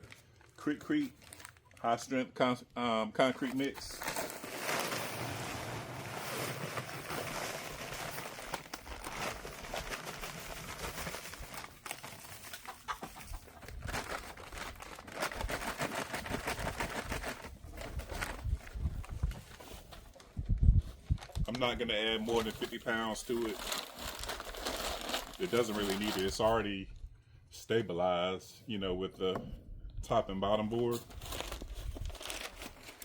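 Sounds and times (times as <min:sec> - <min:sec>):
dry concrete mix pouring: 0:03.6 - 0:11.8
chickens clucking: 0:12.4 - 0:13.7.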